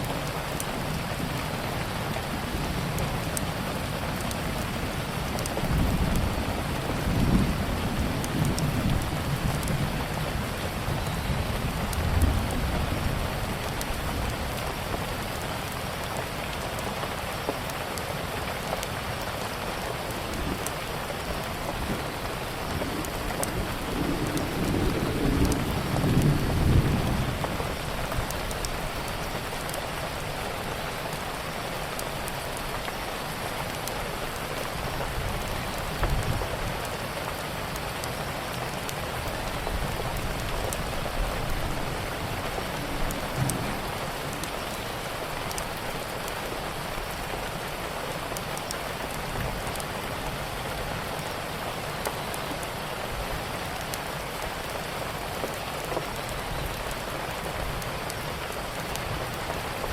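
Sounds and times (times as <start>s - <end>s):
rain falling: 0.0s - 59.9s
wood fire crackling: 11.4s - 50.0s.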